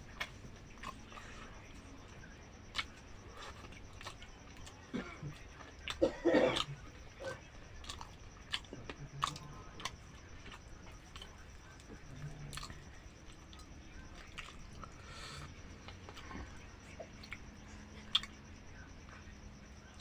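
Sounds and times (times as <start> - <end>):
person chewing food: 2.7 - 6.0, 6.6 - 17.4, 18.0 - 18.4.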